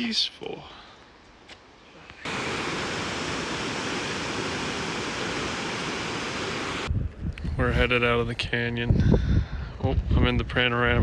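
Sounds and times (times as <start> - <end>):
waterfall rushing: 2.3 - 6.9.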